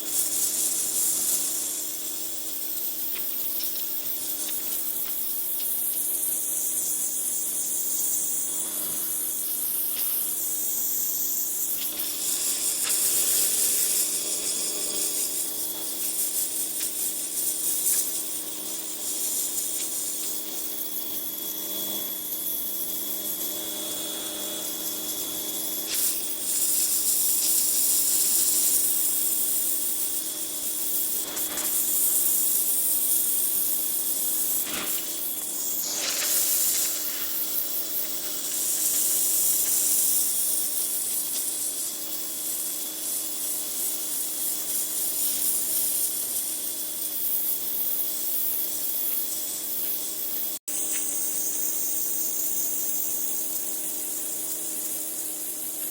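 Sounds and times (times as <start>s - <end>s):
pressure washer spraying water: 11.8s - 20.4s, 25.1s - 29.4s, 31.3s - 41.8s.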